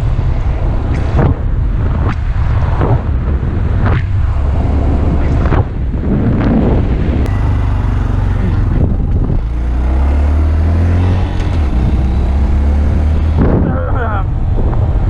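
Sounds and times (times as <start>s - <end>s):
wind on microphone: 0.0s - 7.5s, 8.2s - 9.8s, 11.2s - 15.0s
motorcycle engine running: 7.3s - 13.5s.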